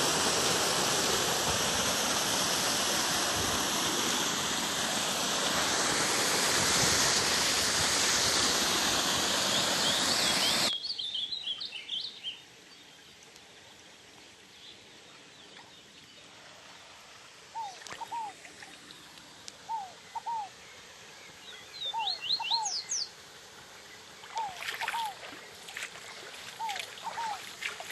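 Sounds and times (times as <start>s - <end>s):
small waterfall rushing: 0.0s - 10.7s, 16.2s - 27.9s
quick high bird chirps: 24.3s - 25.2s.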